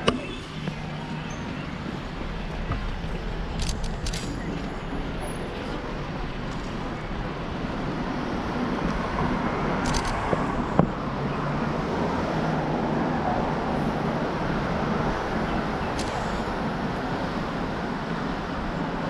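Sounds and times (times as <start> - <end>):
cars passing: 0.0 - 19.0
sharp click: 3.6 - 4.7, 9.8 - 10.5, 16.0 - 16.5.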